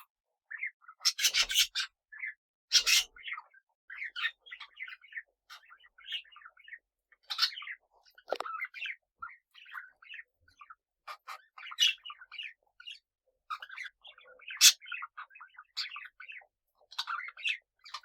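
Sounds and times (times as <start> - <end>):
parrots chattering: 8.3 - 8.6.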